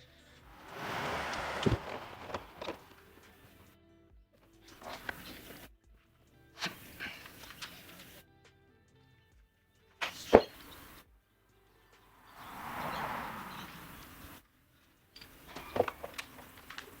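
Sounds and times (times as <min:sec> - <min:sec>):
smooth hissing swell: 0:00.4 - 0:03.7, 0:12.0 - 0:14.4.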